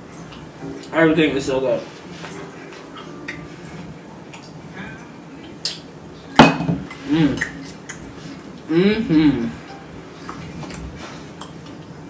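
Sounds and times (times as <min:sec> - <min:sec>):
tableware clinking: 0:06.4 - 0:07.0.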